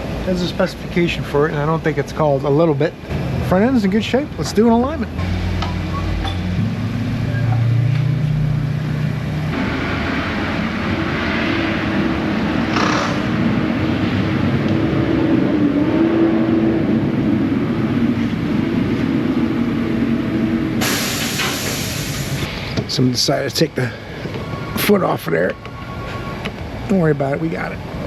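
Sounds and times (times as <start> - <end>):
short hiss: 20.8 - 22.7.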